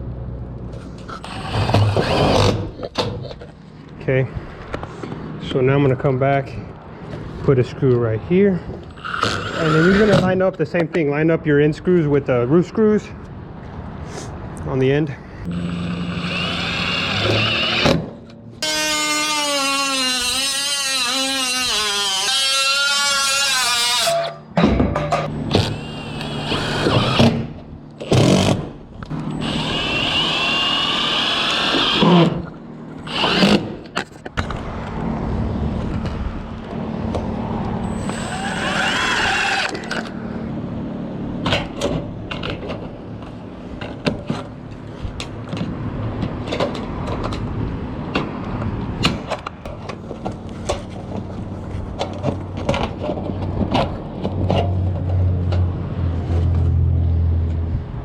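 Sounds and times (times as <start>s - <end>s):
cordless drill driving screws: 1.1s - 2.7s, 8.9s - 10.3s, 15.6s - 23.8s, 25.5s - 27.4s, 29.3s - 34.1s, 37.9s - 40.2s
metal knocks and clicks: 24.6s - 25.3s.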